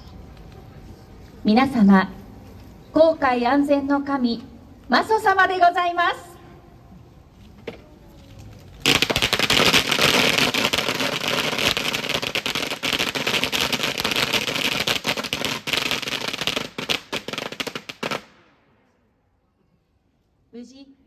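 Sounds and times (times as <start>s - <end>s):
firecrackers crackling: 8.6s - 18.6s.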